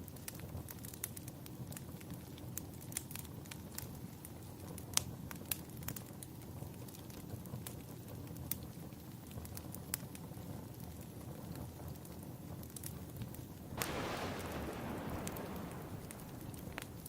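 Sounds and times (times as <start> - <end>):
wood fire crackling: 0.2 - 17.0.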